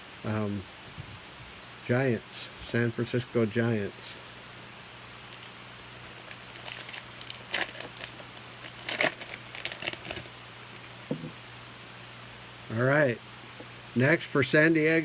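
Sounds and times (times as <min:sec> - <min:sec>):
trading card packaging crinkling: 0:05.3 - 0:11.1.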